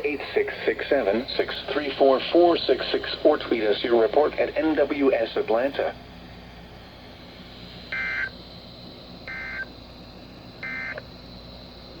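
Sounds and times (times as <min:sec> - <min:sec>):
radio hiss: 0:00.0 - 0:09.8.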